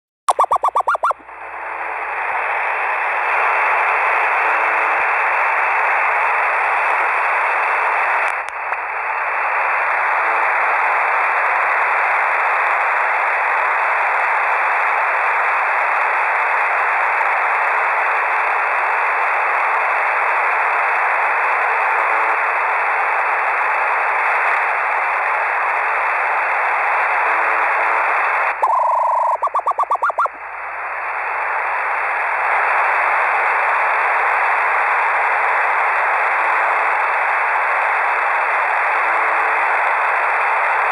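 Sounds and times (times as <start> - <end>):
rapid beeping pulses: 0.3 - 1.2, 28.6 - 30.4.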